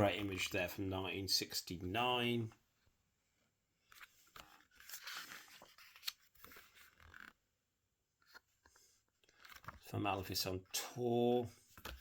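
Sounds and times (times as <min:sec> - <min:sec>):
paper booklet rustling: 0:03.8 - 0:07.4, 0:08.2 - 0:10.6.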